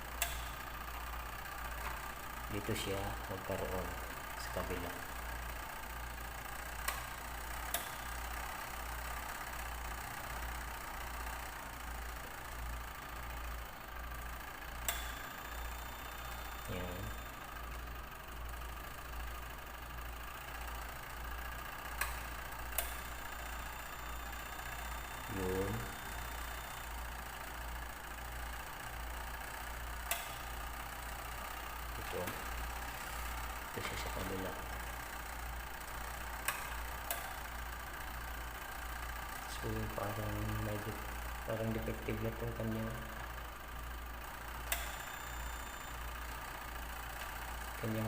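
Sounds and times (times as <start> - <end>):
washing machine motor humming: 0.0 - 48.0
sharp click: 0.2 - 0.6, 7.7 - 8.0, 14.8 - 15.2, 22.0 - 23.2, 30.1 - 30.5, 36.4 - 37.4, 44.7 - 45.1
timer switch clicks: 0.2 - 1.1, 6.6 - 9.9, 14.8 - 17.8, 21.9 - 27.1, 29.9 - 40.0, 44.6 - 46.4.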